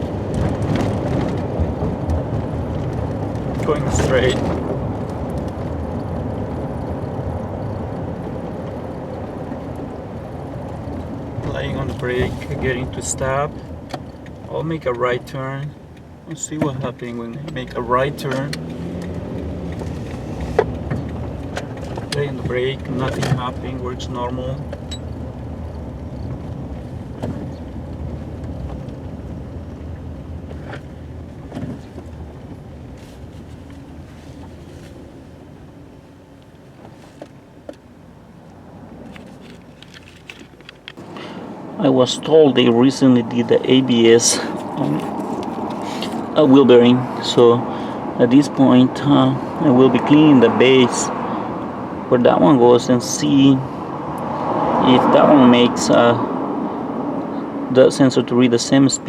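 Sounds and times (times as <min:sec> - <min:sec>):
road and engine noise in cab: 0:00.0 - 0:59.0.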